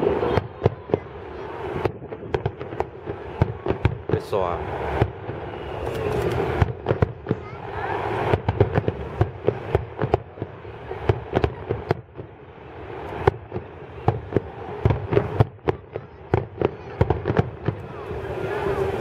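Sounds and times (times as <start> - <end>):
fireworks shells bursting: 5.8 - 7.0.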